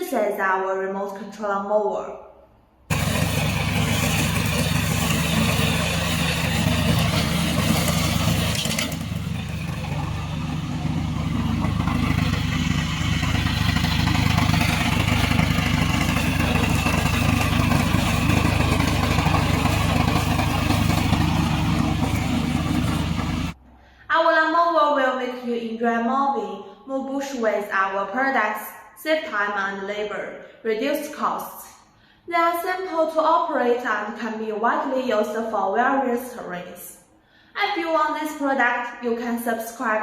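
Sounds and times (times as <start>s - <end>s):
lawn mower engine running: 2.9s - 23.6s.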